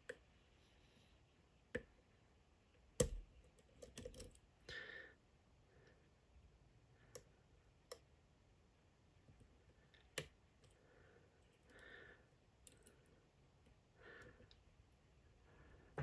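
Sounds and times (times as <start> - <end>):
lock pick clicks: 3.0 - 4.3.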